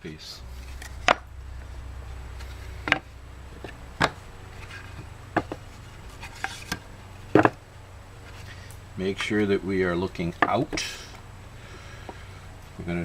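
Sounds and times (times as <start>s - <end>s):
low hum: 0.0s - 13.0s
wooden pieces knocking on workbench: 6.4s - 7.6s.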